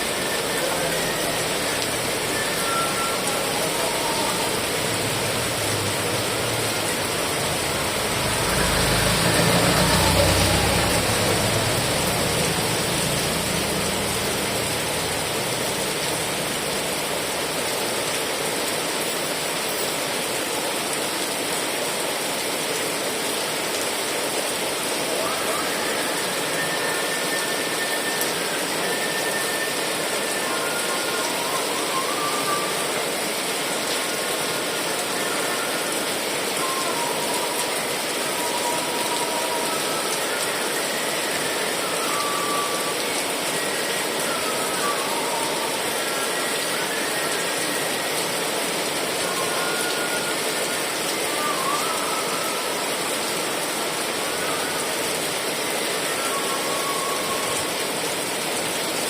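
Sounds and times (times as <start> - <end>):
heavy rain: 0.0 - 59.0
faint short whistles: 0.5 - 4.5, 25.5 - 33.0, 51.3 - 52.6.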